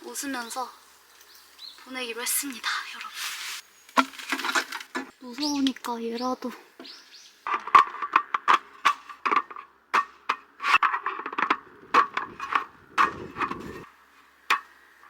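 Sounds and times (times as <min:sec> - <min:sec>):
scraping rustle: 0:01.0 - 0:05.2, 0:10.6 - 0:14.3.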